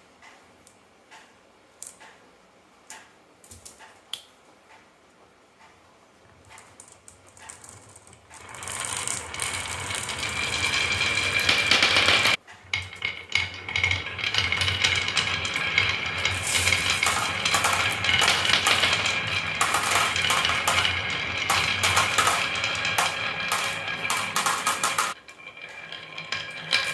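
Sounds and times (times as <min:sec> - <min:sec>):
marbles rattling down marble run: 0:06.5 - 0:26.9.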